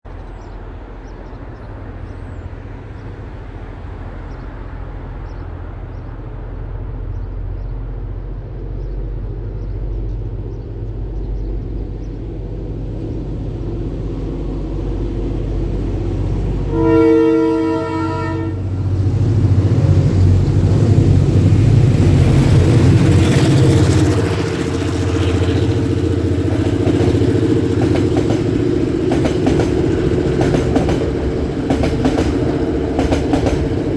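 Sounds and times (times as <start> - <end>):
diesel locomotive engines rumbling: 0.0 - 33.9
locomotive horn: 15.1 - 21.4.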